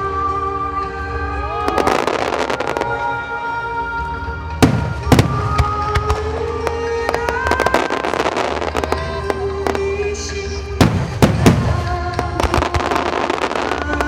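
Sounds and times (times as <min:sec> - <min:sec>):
music with long held notes: 0:00.0 - 0:14.0
fireworks bursting and crackling: 0:01.7 - 0:03.2, 0:04.6 - 0:14.0.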